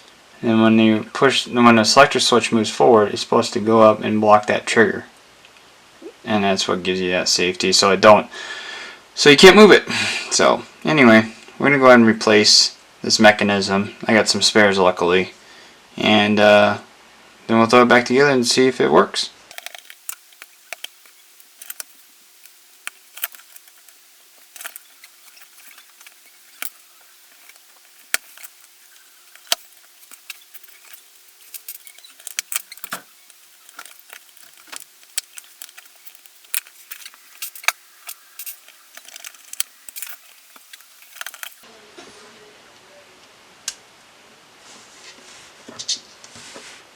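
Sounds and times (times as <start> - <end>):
faint steady hum: 0.0 - 44.8
small parts clicking and tapping: 19.5 - 41.6.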